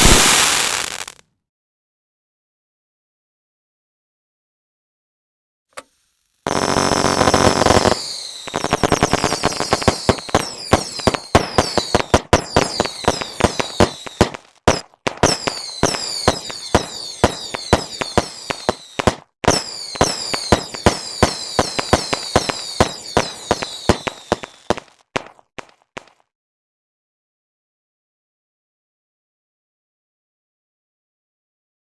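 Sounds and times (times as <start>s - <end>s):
fireworks cracking: 0.0s - 1.2s, 6.5s - 26.2s
fireworks whistles falling in pitch: 0.0s - 1.2s, 6.5s - 26.1s.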